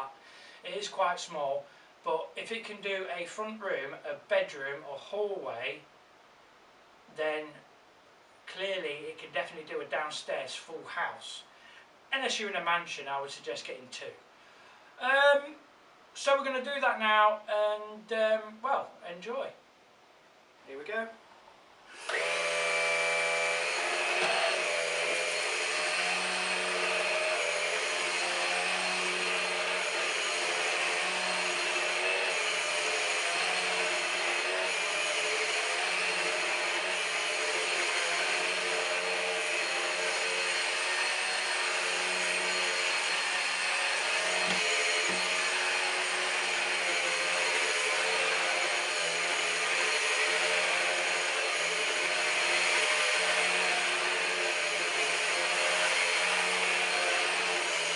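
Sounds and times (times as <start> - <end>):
stick vacuum running: 22.0 - 37.0, 42.4 - 57.9.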